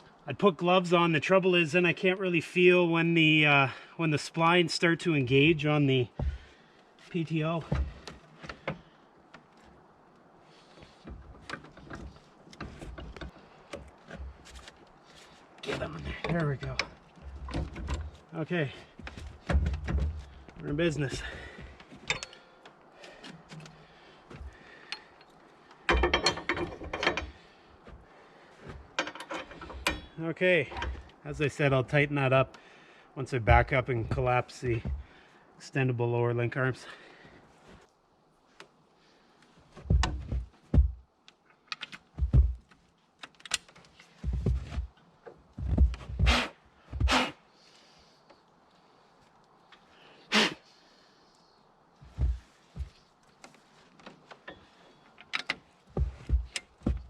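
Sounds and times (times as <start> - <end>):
dull thumps: 6.1 - 6.5, 18.9 - 22.0, 39.8 - 41.0, 42.1 - 42.7, 45.6 - 47.2, 52.1 - 53.0
metal parts clanking and rattling: 22.0 - 22.5, 24.9 - 27.4, 28.9 - 31.0.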